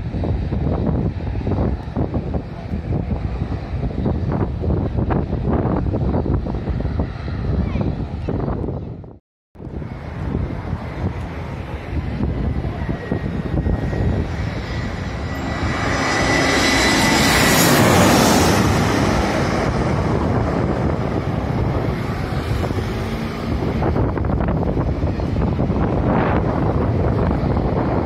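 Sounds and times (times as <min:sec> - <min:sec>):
jet airliner passing overhead: 0:00.0 - 0:28.0
wind buffeting microphone: 0:00.0 - 0:28.0
thin high whine: 0:12.9 - 0:19.9.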